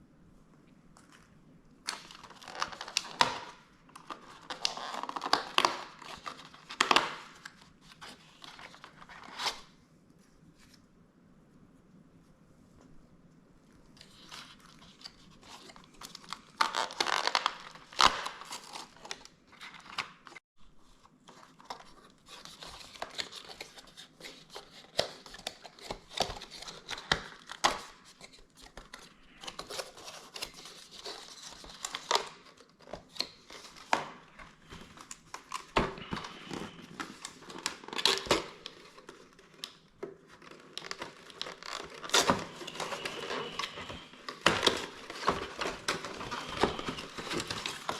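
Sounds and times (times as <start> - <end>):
cardboard and paper tearing: 40.4 - 47.9.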